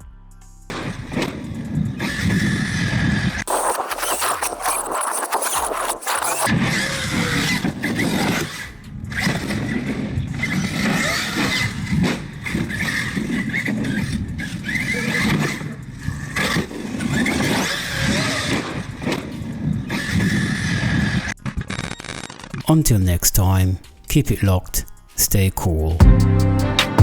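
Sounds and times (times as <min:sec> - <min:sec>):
toy car motors whining: 0:02.0 - 0:21.6.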